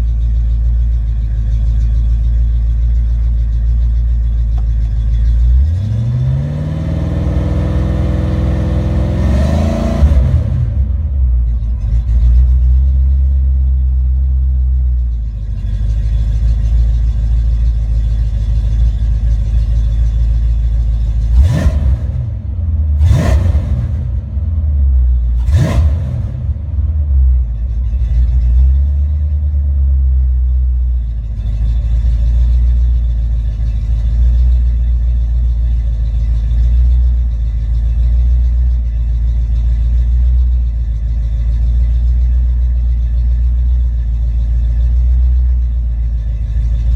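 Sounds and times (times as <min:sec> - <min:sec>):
car engine idling: 0:00.0 - 0:46.9
engine revving: 0:05.5 - 0:12.6, 0:21.2 - 0:27.4.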